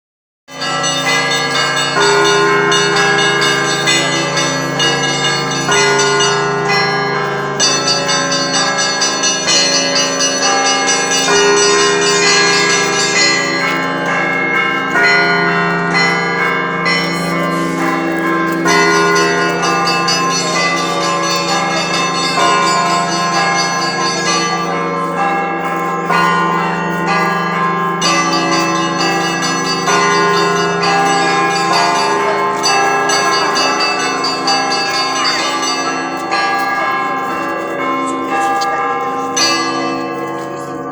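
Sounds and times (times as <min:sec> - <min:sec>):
hum of large bells: 0:00.5 - 0:40.9
small high bells ringing: 0:00.5 - 0:40.9.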